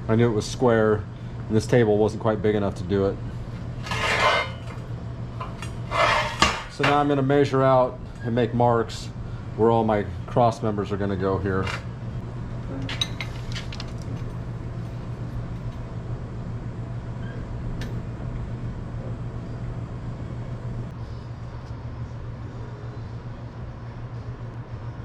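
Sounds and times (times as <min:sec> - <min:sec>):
steady low hum: 0:00.0 - 0:25.0
metal tools clinking: 0:03.8 - 0:04.8.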